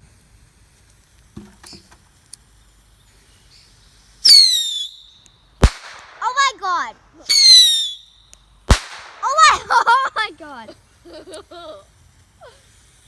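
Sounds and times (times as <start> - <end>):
whistling firework: 2.4 - 6.2, 7.3 - 9.8.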